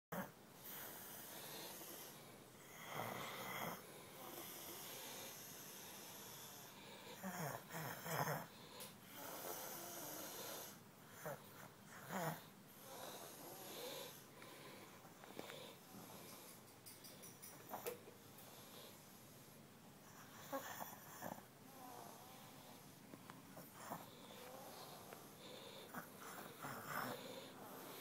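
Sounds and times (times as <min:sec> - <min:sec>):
loud rasping snoring: 0:09.1 - 0:11.4, 0:12.0 - 0:14.2, 0:23.8 - 0:28.0.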